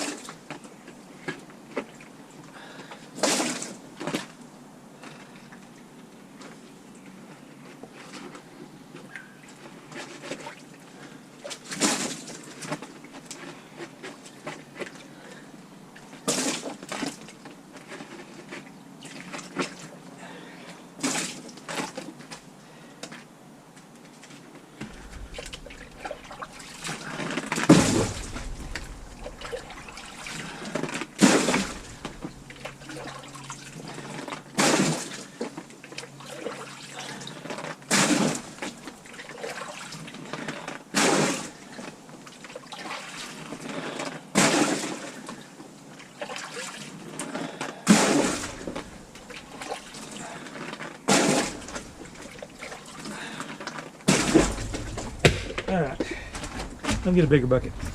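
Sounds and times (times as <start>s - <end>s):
water splashing from bucket: 24.8s - 41.7s, 47.5s - 57.9s.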